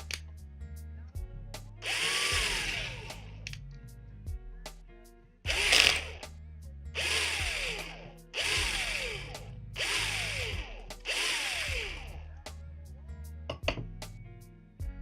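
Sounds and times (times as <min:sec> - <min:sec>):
quiet background music: 0:00.0 - 0:15.0
power drill whining: 0:01.8 - 0:03.5, 0:05.5 - 0:06.2, 0:07.0 - 0:12.2.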